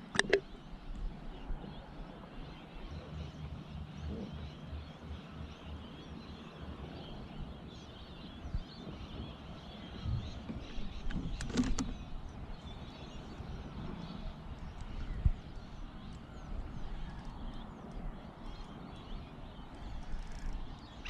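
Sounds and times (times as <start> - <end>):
sharp click: 0.1 - 0.4.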